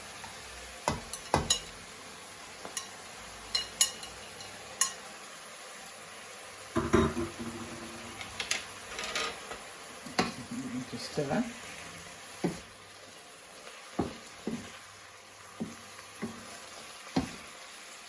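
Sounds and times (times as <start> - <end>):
faint frying sizzle: 0.0 - 18.0
utensil scraping frying pan: 6.8 - 10.6.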